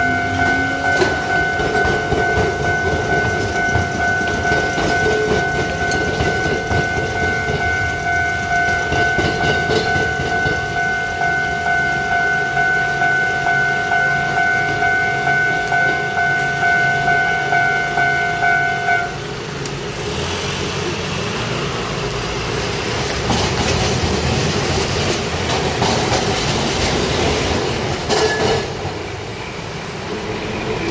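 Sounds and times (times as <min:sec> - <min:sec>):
wheels clacking over rail joints: 0:00.0 - 0:11.8, 0:21.6 - 0:29.4
level crossing alarm ringing: 0:00.0 - 0:19.3
train rumbling: 0:00.0 - 0:30.9.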